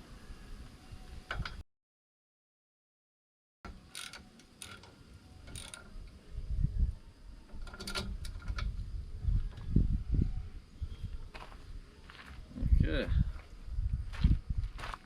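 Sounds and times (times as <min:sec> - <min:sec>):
metal parts clicking and clinking: 0:03.9 - 0:05.9, 0:07.5 - 0:08.7.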